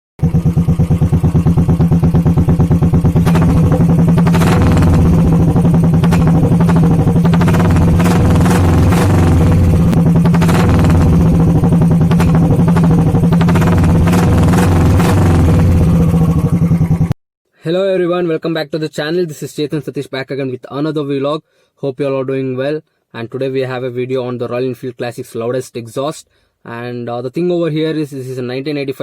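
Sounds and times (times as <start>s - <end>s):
motorcycle engine through loud exhaust: 0.2s - 17.2s.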